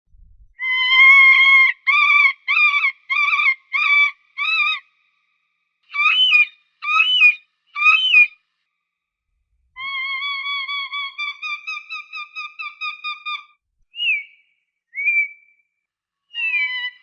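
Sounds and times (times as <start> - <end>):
falcon calling: 5.9 - 8.4, 16.3 - 17.0.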